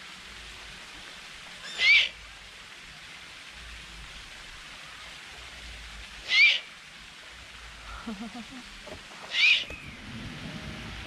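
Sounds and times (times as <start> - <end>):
steady hiss: 0.0 - 11.0
short high bird call: 9.3 - 10.0.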